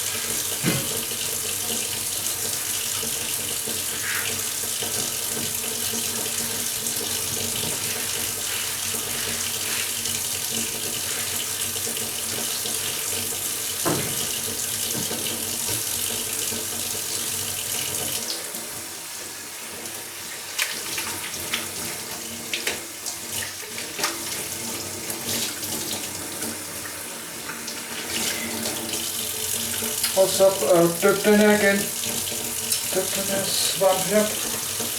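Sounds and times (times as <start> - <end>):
water running from a tap: 0.0 - 34.9
water splashing and dripping: 20.5 - 34.9.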